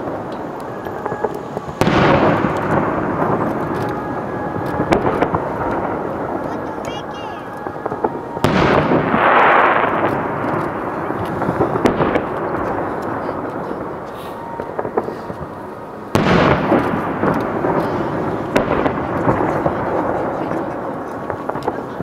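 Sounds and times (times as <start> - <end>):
crackling pops: 0.0 - 22.0
fireworks booming: 0.0 - 22.0.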